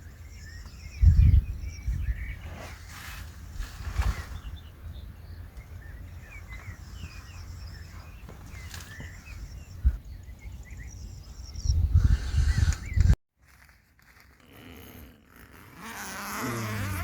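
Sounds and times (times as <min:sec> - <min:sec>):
bird chirps: 0:00.0 - 0:03.2, 0:04.0 - 0:13.2.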